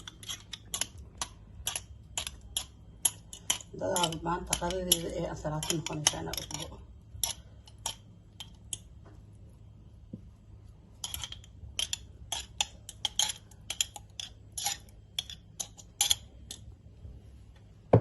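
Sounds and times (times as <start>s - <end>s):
utensils clinking against a dish: 0.0s - 8.9s, 11.0s - 16.7s.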